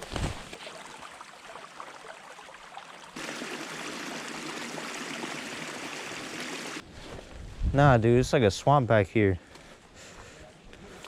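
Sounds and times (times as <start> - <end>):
creek water running over rocks: 0.0 - 6.8.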